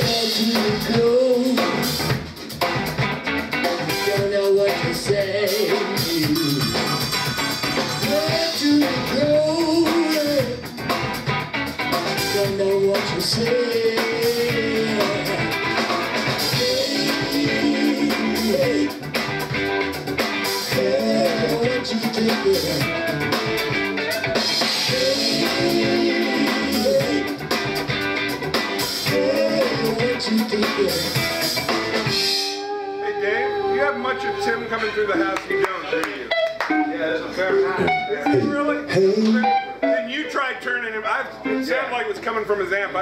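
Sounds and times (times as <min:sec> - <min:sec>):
drum kit: 0:00.0 - 0:34.0
electric guitar: 0:00.0 - 0:40.3
bass guitar: 0:00.0 - 0:40.5.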